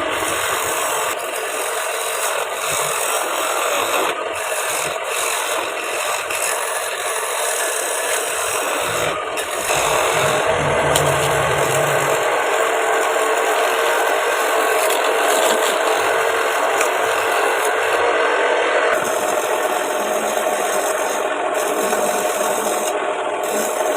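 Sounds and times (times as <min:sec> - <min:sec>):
wood lathe scraping wood: 0:00.0 - 0:12.7, 0:19.0 - 0:23.9.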